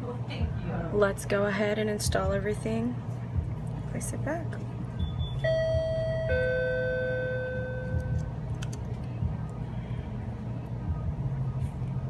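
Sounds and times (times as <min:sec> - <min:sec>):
two-tone door chime: 0:05.2 - 0:08.2.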